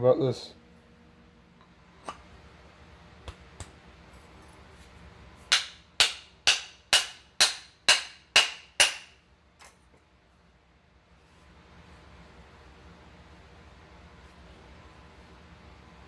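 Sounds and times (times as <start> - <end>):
hammer striking wooden handle: 5.5 - 9.2.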